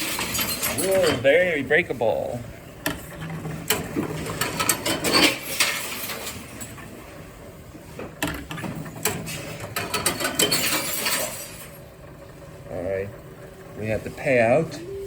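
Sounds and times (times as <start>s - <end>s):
vending machine mechanism clicks and clunks: 0.0s - 1.7s, 2.8s - 7.0s, 7.9s - 11.8s.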